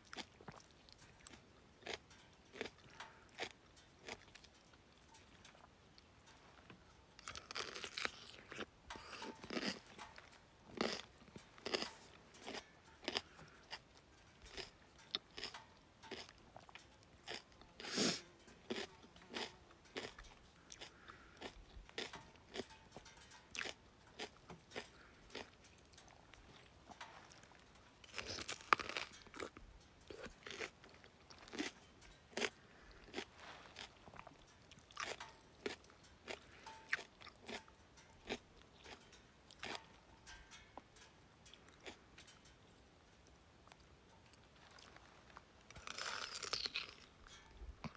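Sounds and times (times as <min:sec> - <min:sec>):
crunching cucumber bites: 0:07.2 - 0:09.9, 0:10.8 - 0:11.9, 0:14.5 - 0:15.5, 0:18.7 - 0:22.7, 0:28.1 - 0:30.8, 0:45.7 - 0:47.2.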